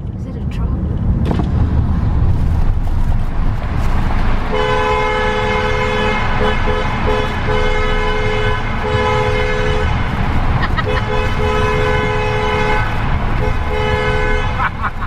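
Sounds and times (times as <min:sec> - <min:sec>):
road noise rumble: 0:00.0 - 0:15.0
two-tone car horn honking: 0:04.4 - 0:15.0.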